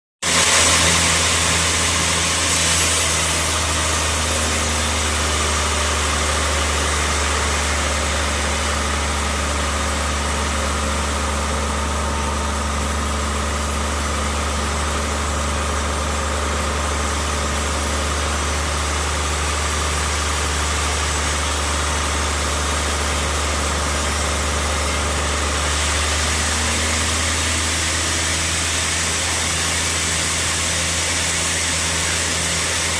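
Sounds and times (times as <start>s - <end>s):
band sawmill humming and hissing: 0.2s - 32.9s.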